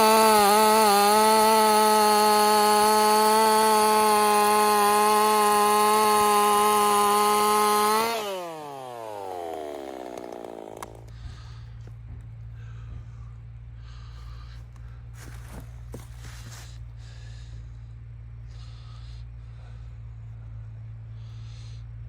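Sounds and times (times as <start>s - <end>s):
chainsaw running flat out: 0.0s - 11.4s
chainsaw engine slowing down: 0.0s - 12.2s.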